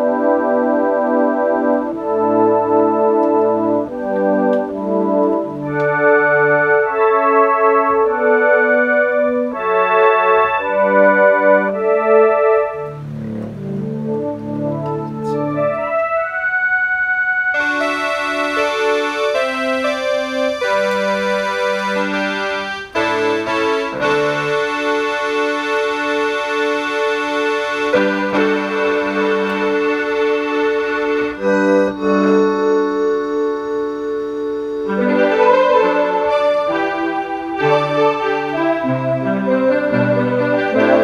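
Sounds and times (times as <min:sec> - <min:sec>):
electronic keyboard organ tone: 0:00.0 - 0:41.0
bass line: 0:10.4 - 0:41.0.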